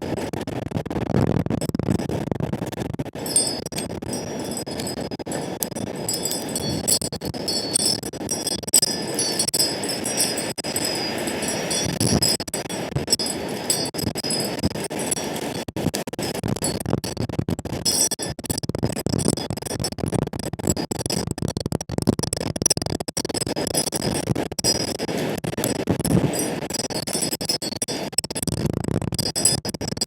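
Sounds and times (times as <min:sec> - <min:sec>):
high tinkling tones: 0:03.2 - 0:15.4.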